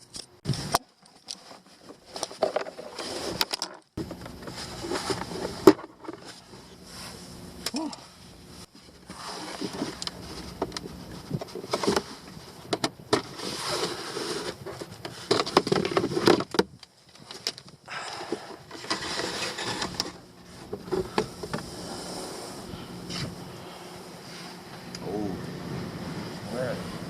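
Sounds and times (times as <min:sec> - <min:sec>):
parts rustling and scraping: 0:00.0 - 0:27.0.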